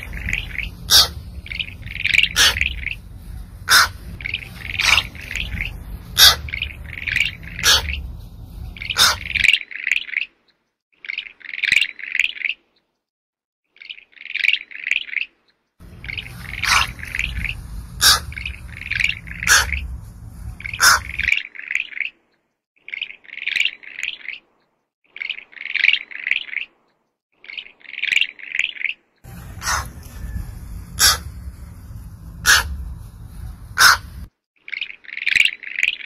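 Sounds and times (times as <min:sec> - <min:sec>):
high-pitched animal chirping: 0:00.0 - 0:10.2, 0:16.0 - 0:20.0, 0:20.6 - 0:21.5, 0:29.6 - 0:29.9, 0:31.0 - 0:31.3, 0:32.4 - 0:32.8, 0:33.8 - 0:35.7.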